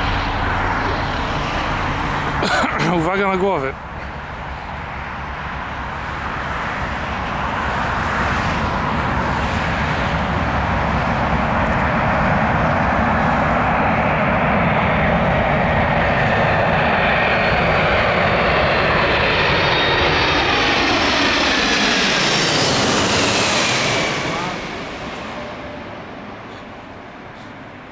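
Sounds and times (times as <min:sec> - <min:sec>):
high whine sliding down: 0:00.0 - 0:14.4
jetliner passing overhead: 0:00.0 - 0:27.9.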